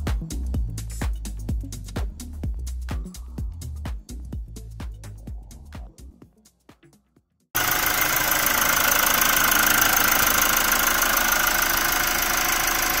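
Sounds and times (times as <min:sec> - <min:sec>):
car engine running: 0:07.6 - 0:13.0.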